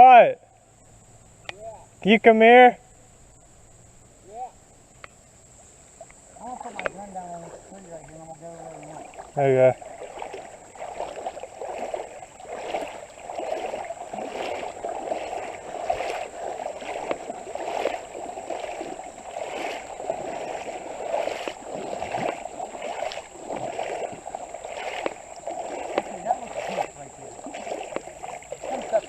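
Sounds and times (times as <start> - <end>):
boots wading through water: 5.9 - 29.0.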